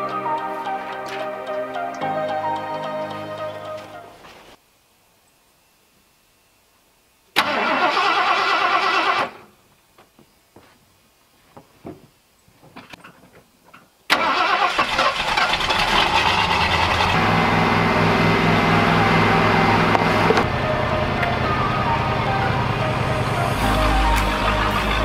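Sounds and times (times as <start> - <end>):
engine starting and idling: 7.4 - 9.5, 14.1 - 25.0.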